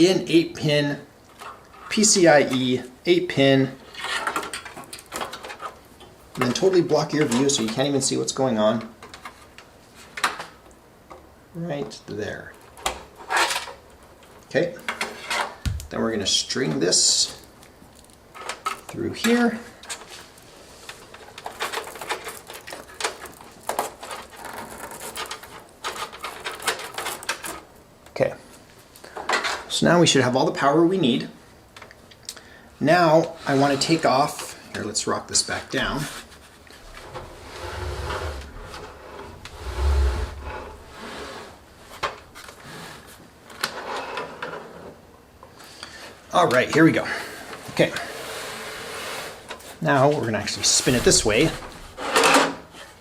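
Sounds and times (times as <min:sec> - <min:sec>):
cable rustling in computer case: 0:19.9 - 0:27.7
computer case rubbing and scraping: 0:35.8 - 0:41.7, 0:50.6 - 0:52.2
dull low thumps: 0:37.0 - 0:40.9.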